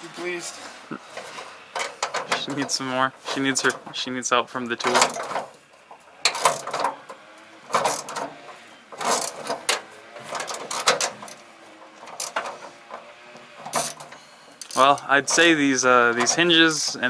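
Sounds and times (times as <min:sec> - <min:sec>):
ratchet wrench clicking: 0:14.6 - 0:15.1.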